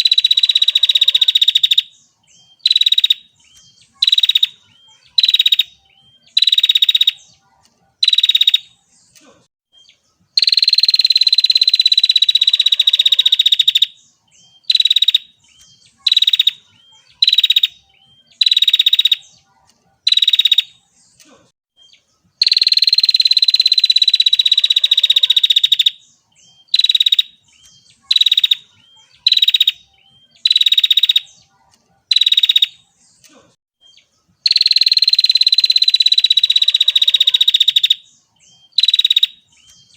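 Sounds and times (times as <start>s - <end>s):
bird buzzy trill: 0.0s - 7.4s, 10.4s - 19.4s, 22.4s - 31.4s, 34.4s - 39.9s.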